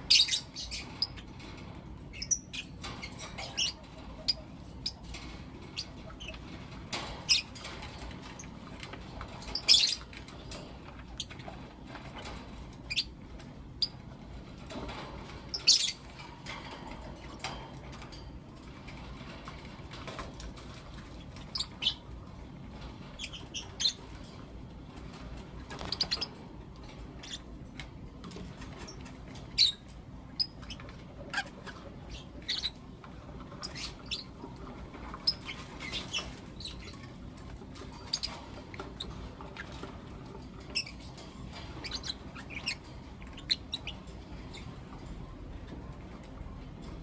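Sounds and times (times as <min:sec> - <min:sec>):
lovebirds chirping: 0:00.0 - 0:01.3, 0:02.1 - 0:06.5, 0:09.4 - 0:10.3, 0:15.5 - 0:16.2, 0:28.8 - 0:32.9, 0:33.6 - 0:34.4, 0:35.2 - 0:37.2, 0:40.6 - 0:44.8
low background noise: 0:00.0 - 0:47.0.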